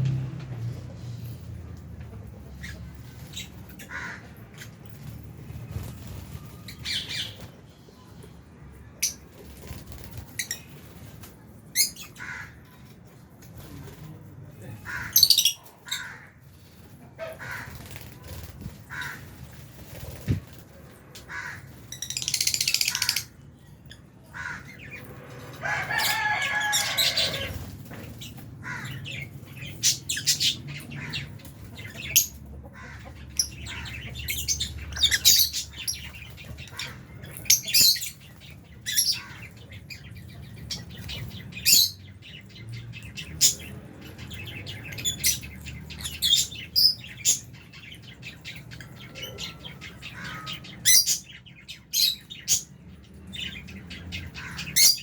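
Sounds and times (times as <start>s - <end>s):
lovebirds chirping: 21.7s - 25.0s.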